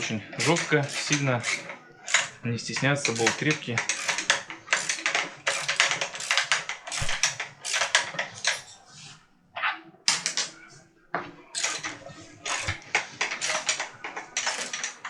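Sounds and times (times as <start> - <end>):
ratchet handle clicking: 0.4 - 2.3, 3.0 - 8.6, 11.6 - 11.9, 12.5 - 15.0.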